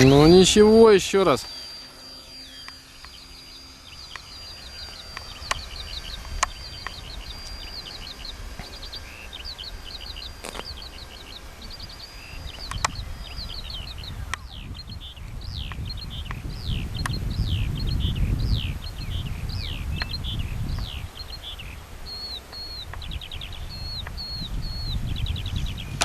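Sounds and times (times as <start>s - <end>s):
songbird chirping: 0.0s - 26.0s
sharp clicks: 4.0s - 8.9s, 12.4s - 13.1s
wind rumble on microphone: 4.0s - 26.0s.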